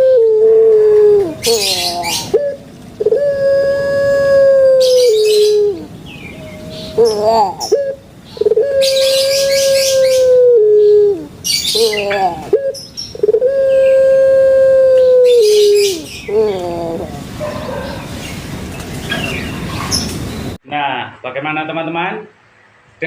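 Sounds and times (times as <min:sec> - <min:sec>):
dove cooing: 0:00.0 - 0:18.2.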